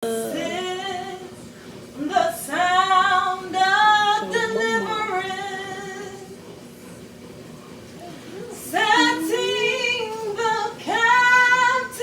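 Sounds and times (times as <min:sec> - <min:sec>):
women singing worship: 0:00.0 - 0:01.4, 0:02.0 - 0:06.4, 0:08.6 - 0:12.0.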